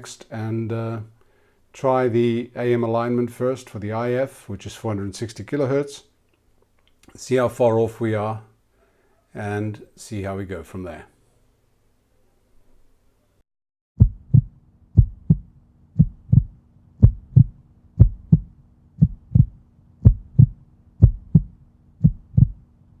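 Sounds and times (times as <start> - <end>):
heartbeat-like double thumps: 14.0 - 22.7
faint steady hum: 14.0 - 23.0.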